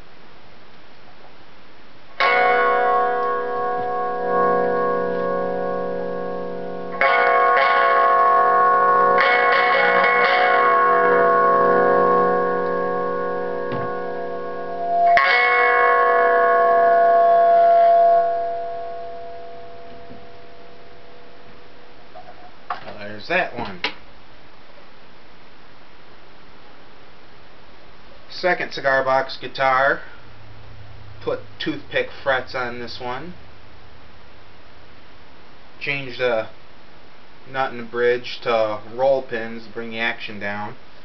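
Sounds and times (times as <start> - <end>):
amplified guitar chords ringing: 2.2 - 22.7.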